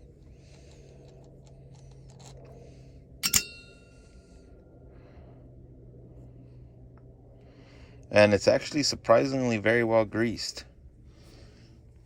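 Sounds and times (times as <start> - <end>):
faint low hum: 0.0 - 12.0
sharp metallic clink: 3.2 - 4.0.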